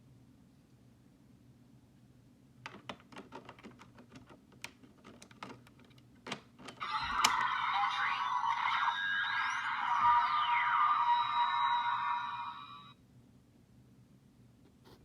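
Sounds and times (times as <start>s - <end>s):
toy electronic sound effect: 6.8s - 13.0s.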